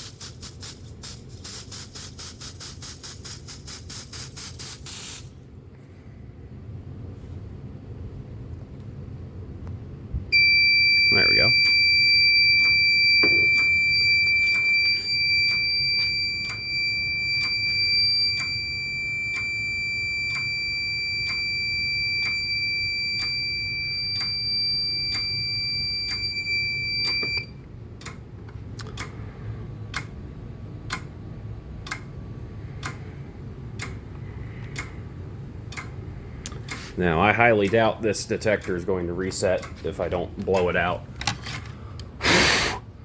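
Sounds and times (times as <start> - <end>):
high-pitched electronic alarm tone: 10.4 - 27.6.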